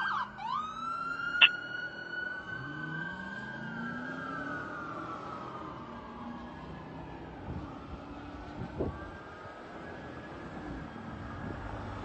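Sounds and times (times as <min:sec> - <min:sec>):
fire engine siren wailing: 0:00.0 - 0:12.0.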